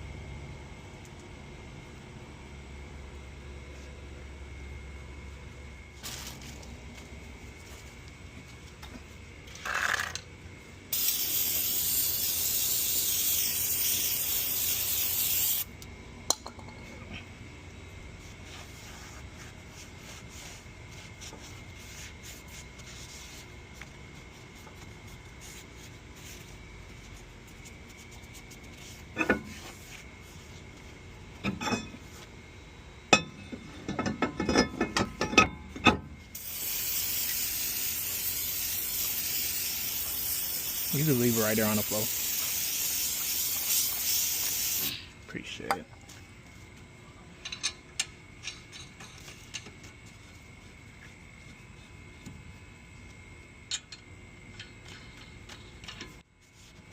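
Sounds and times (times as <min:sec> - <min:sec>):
aerosol spray can hissing: 0:10.9 - 0:15.7, 0:36.4 - 0:44.9.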